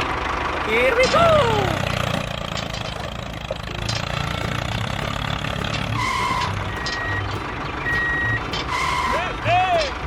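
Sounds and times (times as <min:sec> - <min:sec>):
vehicle engine running: 0:00.0 - 0:10.0
reversing alarm beeping: 0:05.9 - 0:09.3.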